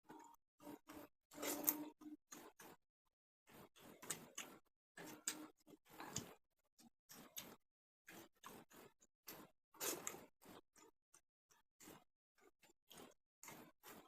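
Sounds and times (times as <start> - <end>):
chewing smacks and clicks: 3.5 - 14.0.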